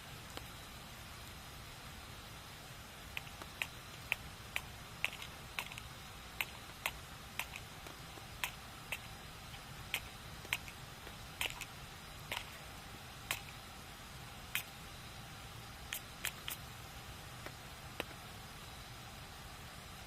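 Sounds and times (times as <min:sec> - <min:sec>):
low background noise: 0:00.0 - 0:20.0.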